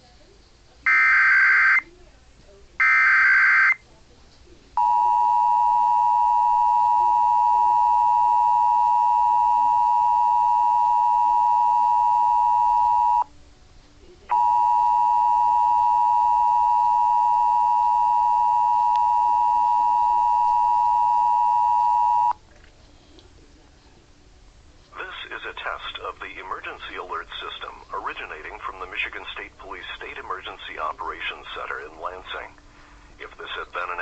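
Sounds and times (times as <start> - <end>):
two-tone alert alarm: 0.9 - 1.9, 2.8 - 3.8, 4.8 - 13.2, 14.3 - 22.4.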